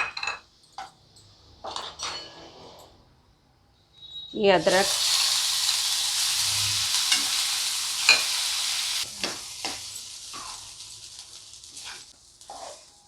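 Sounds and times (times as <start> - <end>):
paste sizzling in hot fat: 4.6 - 13.0.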